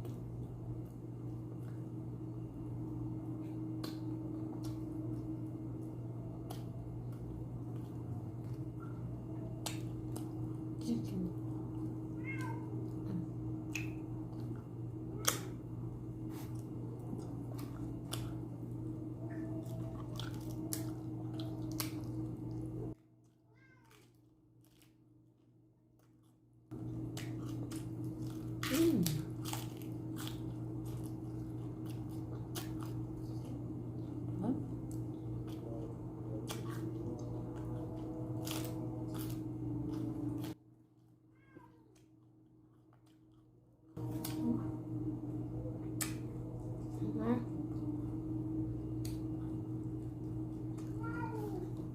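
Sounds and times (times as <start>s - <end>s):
low hum: 0.0s - 23.0s, 26.7s - 41.1s, 41.9s - 51.9s
cat meowing: 12.1s - 13.0s, 41.3s - 41.9s, 51.0s - 51.7s.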